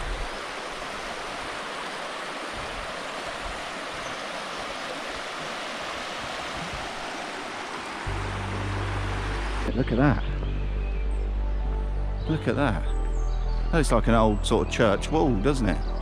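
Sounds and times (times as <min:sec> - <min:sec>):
stream water rushing: 0:00.0 - 0:10.6.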